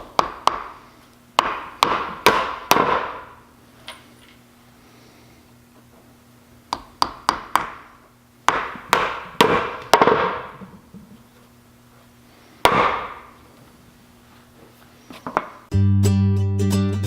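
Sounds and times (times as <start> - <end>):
hammer striking nails: 0.0 - 0.8, 1.4 - 3.4, 6.7 - 10.7, 12.6 - 13.3.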